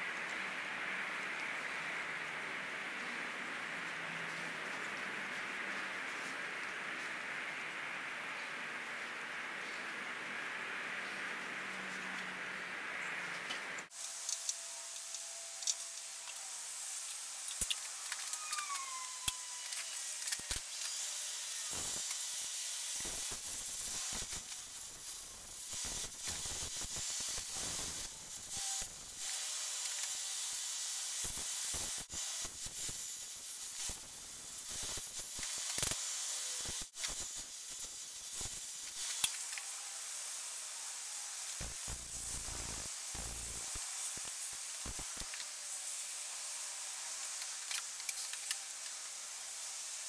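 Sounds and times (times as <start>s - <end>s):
wood lathe hiss: 13.9s - 50.0s.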